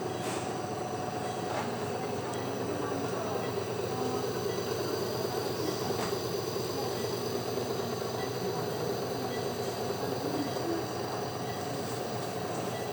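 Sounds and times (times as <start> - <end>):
nebulizer machine humming: 1.7 - 12.9.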